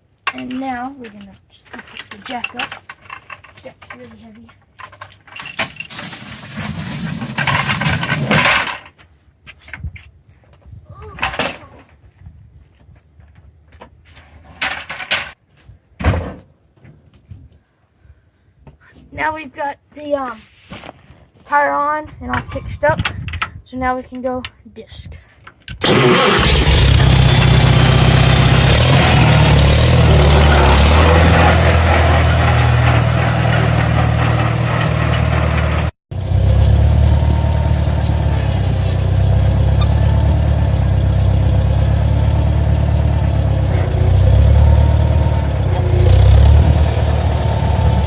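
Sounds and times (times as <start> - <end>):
tractor engine running: 25.8 - 48.0.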